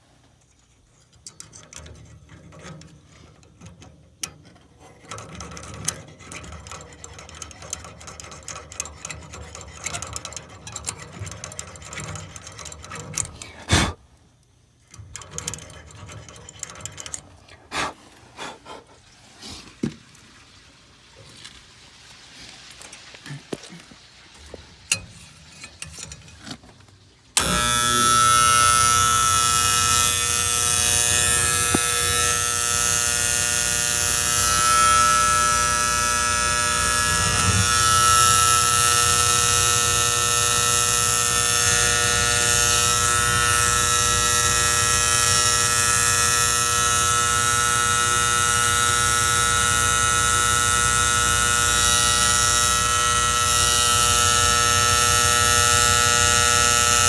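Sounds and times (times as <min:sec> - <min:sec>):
gas valve buzzing: 0:09.7 - 0:14.0, 0:27.4 - 0:57.0.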